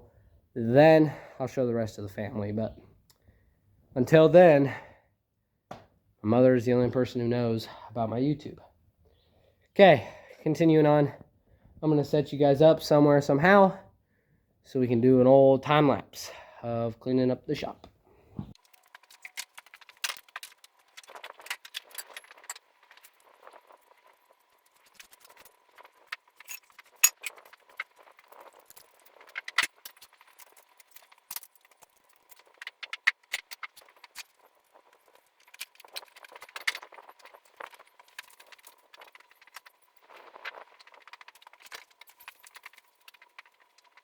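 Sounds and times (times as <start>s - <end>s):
small hard objects clicking and rattling: 18.5s - 44.0s.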